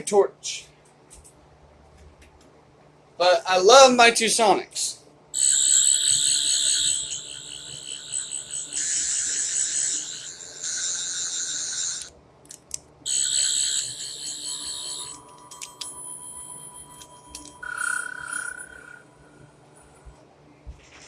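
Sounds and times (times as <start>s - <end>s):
toy electronic warbling: 5.4s - 12.1s, 13.1s - 20.0s.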